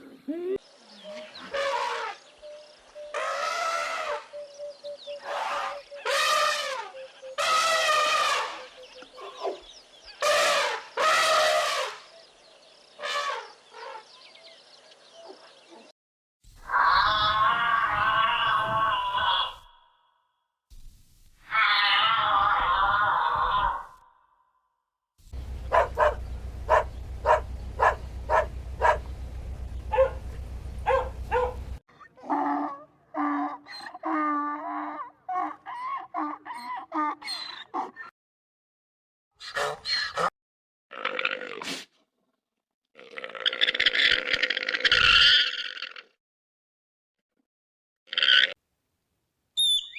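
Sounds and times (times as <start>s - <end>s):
chickens squawking: 5.2s - 9.6s, 25.4s - 31.8s
low hum: 25.3s - 31.8s
chickens clucking: 25.4s - 29.2s.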